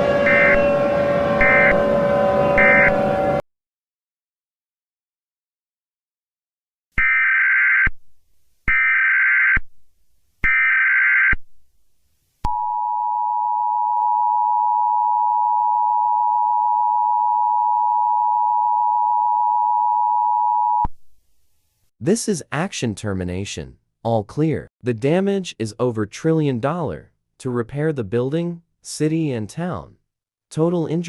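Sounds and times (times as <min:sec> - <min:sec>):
steady alert tone: 0:00.0 - 0:03.4.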